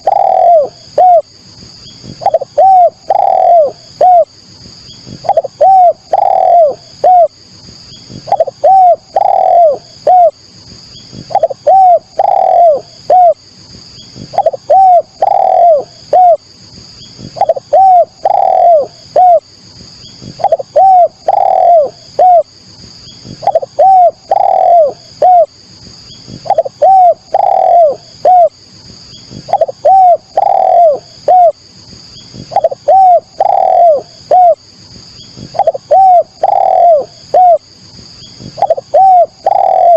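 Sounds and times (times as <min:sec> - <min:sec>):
dove cooing: 0:00.0 - 0:01.3, 0:02.1 - 0:04.3, 0:05.1 - 0:07.4, 0:08.1 - 0:10.4, 0:11.1 - 0:13.4, 0:14.2 - 0:16.4, 0:17.2 - 0:19.5, 0:20.2 - 0:22.5, 0:23.2 - 0:25.6, 0:26.3 - 0:28.6, 0:29.3 - 0:31.6, 0:32.4 - 0:34.6, 0:35.4 - 0:37.7, 0:38.4 - 0:39.9.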